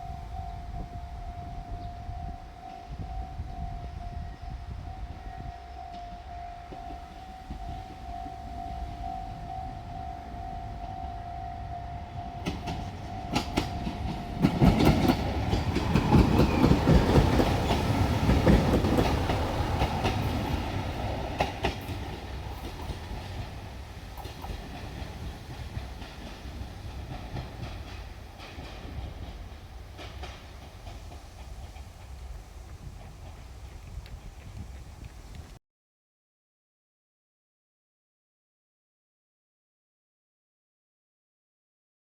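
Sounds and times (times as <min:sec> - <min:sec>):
level crossing warning tone: 0:00.0 - 0:25.8
diesel train passing: 0:00.0 - 0:35.6
train wheels clacking over rail joints: 0:12.3 - 0:35.6.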